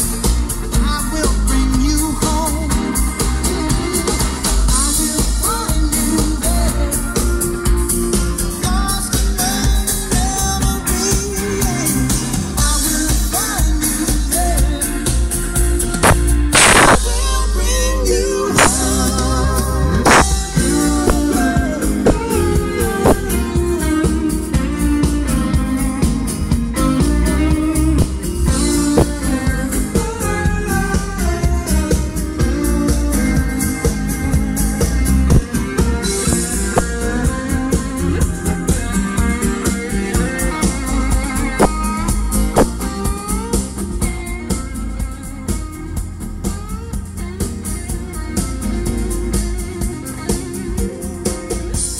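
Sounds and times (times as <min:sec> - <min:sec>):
music with guitar and heavy bass: 0:00.0 - 0:51.9.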